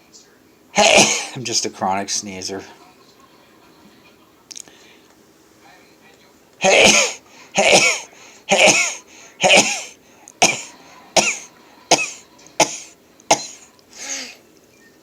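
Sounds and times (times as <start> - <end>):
man sneezing: 0.8 - 1.4, 6.6 - 14.3.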